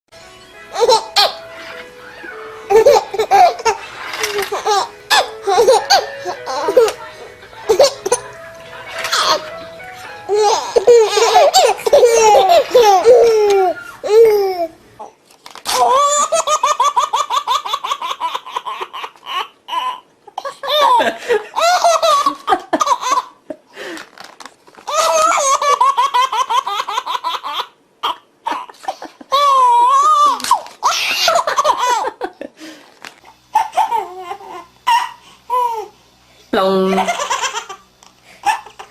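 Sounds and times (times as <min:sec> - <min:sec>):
background music: 0:00.2 - 0:14.6
baby giggling: 0:00.7 - 0:01.4, 0:02.2 - 0:07.0, 0:07.6 - 0:08.3, 0:08.9 - 0:09.6, 0:10.3 - 0:15.1, 0:15.8 - 0:23.4, 0:24.9 - 0:32.4, 0:33.6 - 0:35.9, 0:36.9 - 0:37.8, 0:38.4 - 0:38.9.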